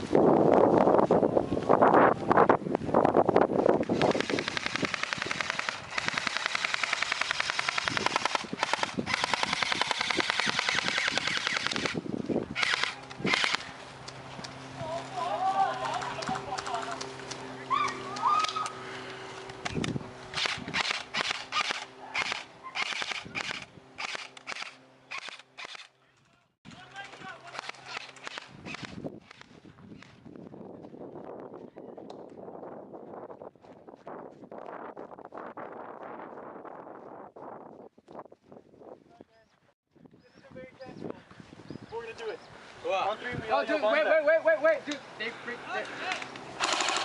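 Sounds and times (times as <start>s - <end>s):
airsoft gun firing bursts: 3.9s - 13.7s, 20.3s - 25.9s, 27.4s - 29.5s, 46.6s - 47.0s
rustling movement: 11.7s - 18.1s.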